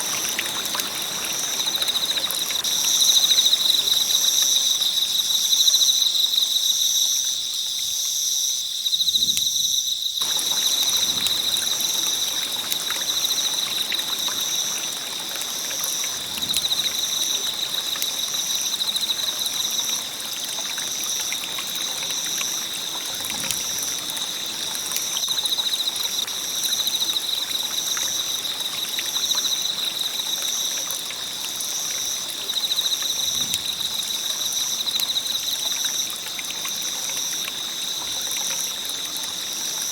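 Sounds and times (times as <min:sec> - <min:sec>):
insects chirring: 0:00.0 - 0:39.9
campfire crackling and hissing: 0:08.8 - 0:21.1.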